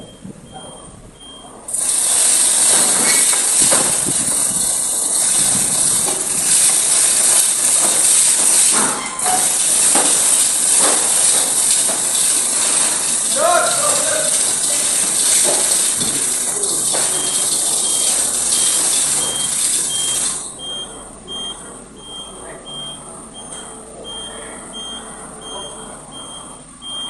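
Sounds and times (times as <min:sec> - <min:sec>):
loud steady hiss: 0:01.6 - 0:22.0.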